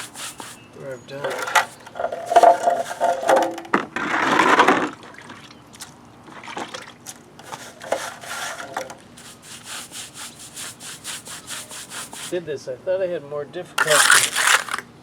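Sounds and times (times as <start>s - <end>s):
trowel scraping wet mortar: 0.0s - 3.3s, 7.4s - 12.4s, 13.8s - 14.8s.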